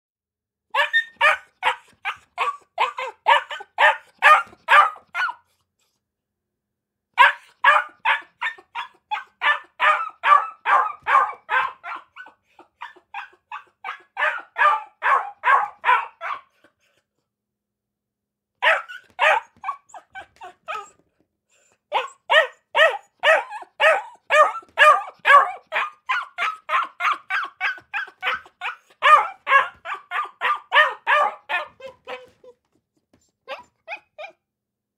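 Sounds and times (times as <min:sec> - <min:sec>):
puppies barking: 0:00.8 - 0:05.4, 0:07.2 - 0:16.5, 0:18.6 - 0:21.0, 0:21.9 - 0:32.4.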